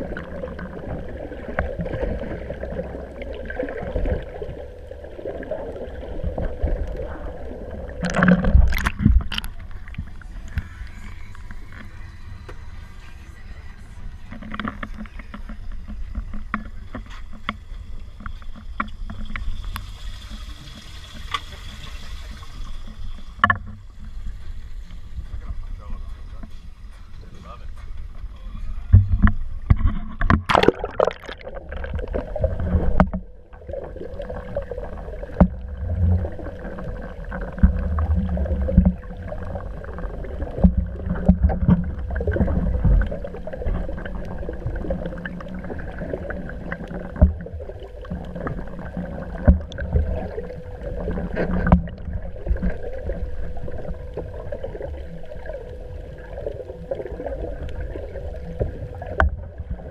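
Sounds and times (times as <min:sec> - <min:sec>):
faint hum: 0:00.0 - 0:59.9
low rumble: 0:30.4 - 0:59.9.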